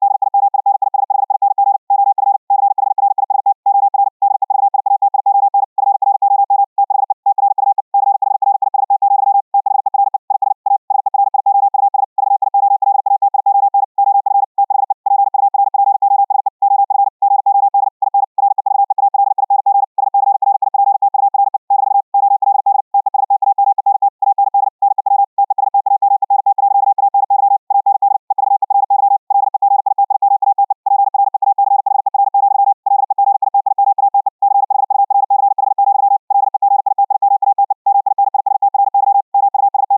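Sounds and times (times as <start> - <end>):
morse code tone: 5.2 - 14.2, 33.6 - 39.9.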